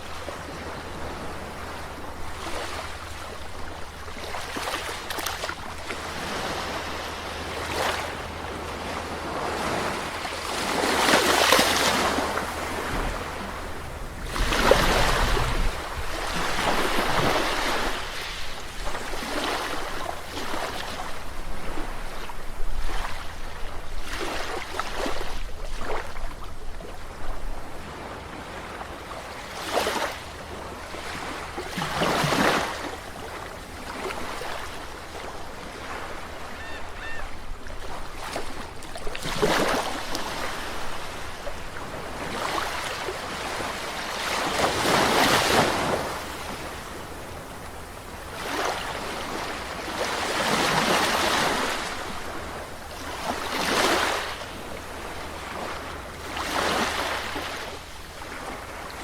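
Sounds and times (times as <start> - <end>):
waves breaking on shore: 0.0 - 59.0.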